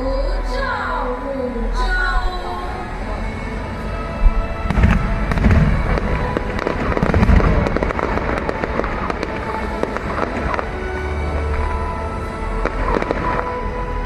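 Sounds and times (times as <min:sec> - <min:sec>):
background music: 0:00.0 - 0:14.0
firework booms: 0:04.6 - 0:10.8
firework crackling and popping: 0:04.7 - 0:14.0.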